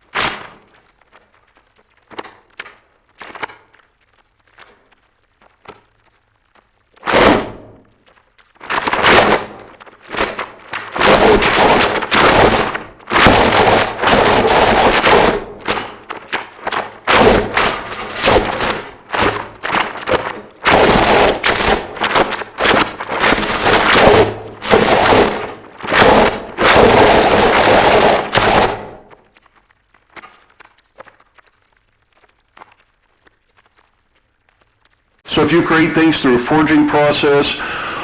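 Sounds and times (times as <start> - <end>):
faint crackles: 0.0 - 38.0
harsh distorted noise music: 16.8 - 29.0.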